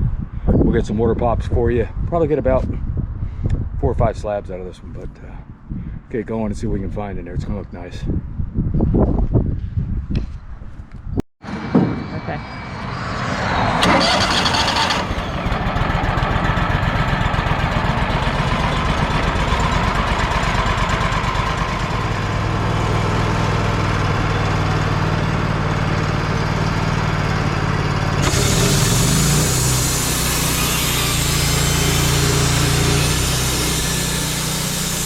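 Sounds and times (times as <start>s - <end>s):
sawmill engine running: 12.8s - 35.0s
hiss: 28.2s - 35.0s.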